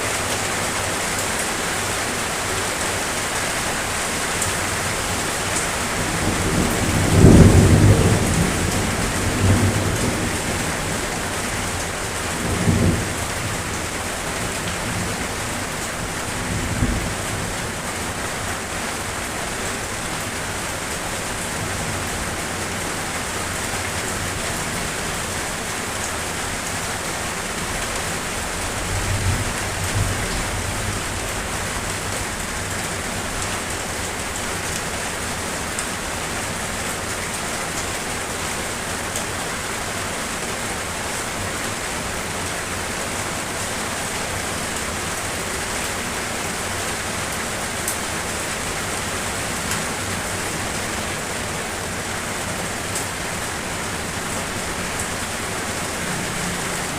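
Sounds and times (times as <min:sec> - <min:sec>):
rain falling: 0:00.0 - 0:56.9
thunder rumbling: 0:05.8 - 0:13.8.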